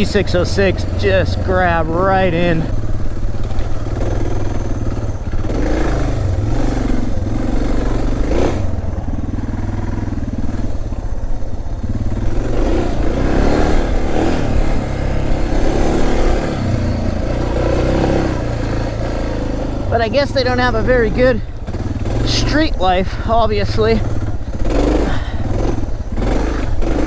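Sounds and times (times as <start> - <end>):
motorcycle engine under load: 0.0 - 27.0.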